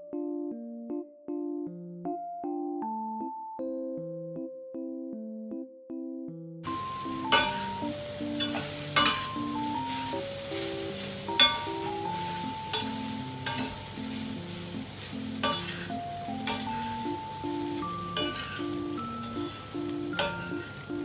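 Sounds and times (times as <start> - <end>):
soft piano music: 0.0 - 21.0
food sizzling in a pan: 6.6 - 21.0
utensil tapping a pan: 6.6 - 21.0.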